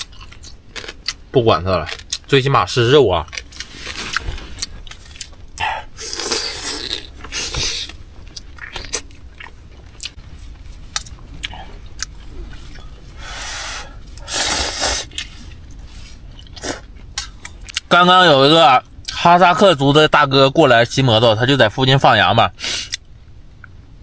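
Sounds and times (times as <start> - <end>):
person chewing and biting: 0.0 - 1.2, 3.2 - 10.2.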